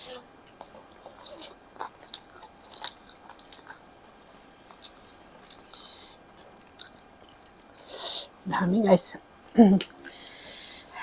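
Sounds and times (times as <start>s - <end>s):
person chewing food: 0.5s - 7.8s
lip smacks and wet clicks: 1.8s - 3.9s.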